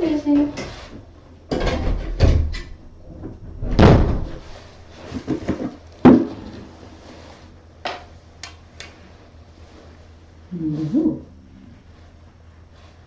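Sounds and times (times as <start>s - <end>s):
objects knocking and thumping: 1.5s - 6.7s.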